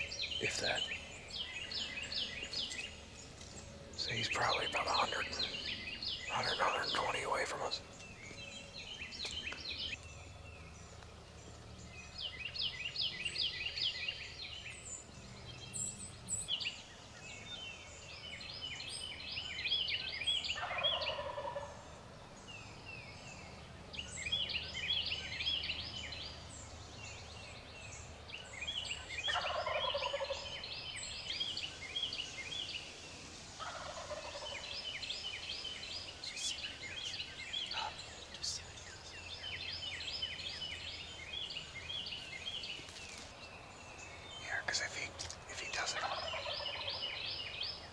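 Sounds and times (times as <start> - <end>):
songbirds trilling: 0.0 - 47.9
turkey gobbling: 20.6 - 21.8, 29.3 - 30.4, 33.6 - 34.6, 46.0 - 46.8.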